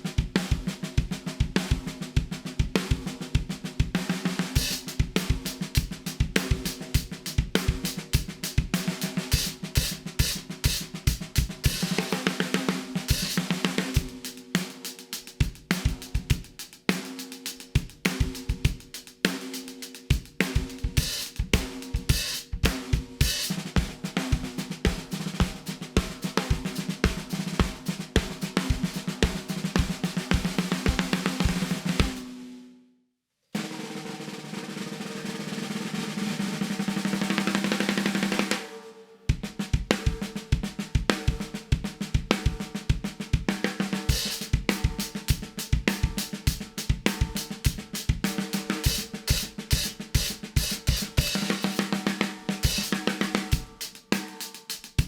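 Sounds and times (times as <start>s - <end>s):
drum kit groove: 0.0s - 32.4s, 33.6s - 38.7s, 39.3s - 55.0s
snare roll: 26.0s - 32.4s.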